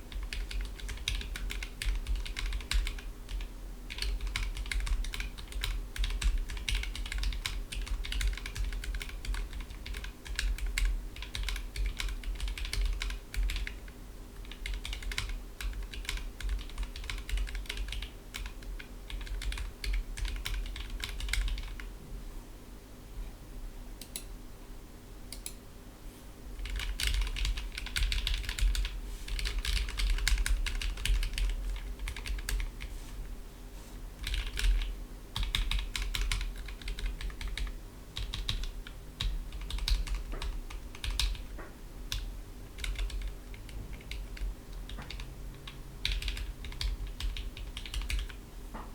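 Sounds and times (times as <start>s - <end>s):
typing on a keyboard: 0.1s - 21.9s, 26.6s - 32.8s, 34.2s - 48.4s.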